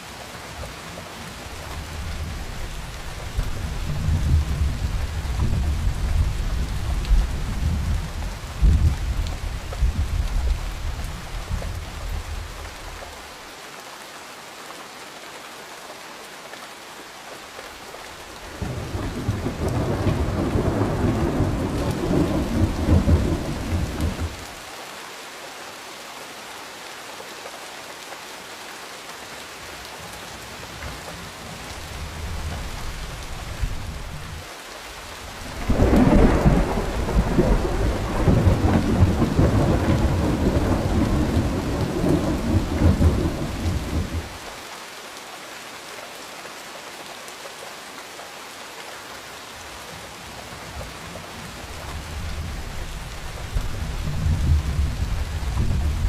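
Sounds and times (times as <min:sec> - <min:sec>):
heavy rain: 0:00.0 - 0:56.0
thunder rumbling: 0:18.5 - 0:24.5, 0:35.4 - 0:44.4, 0:52.0 - 0:56.0.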